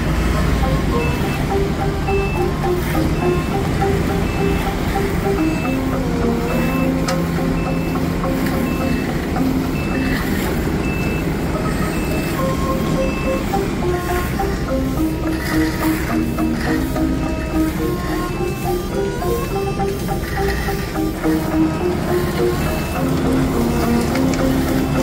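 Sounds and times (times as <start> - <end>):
diesel engine running: 0.0 - 25.0
reversing alarm beeping: 0.0 - 25.0.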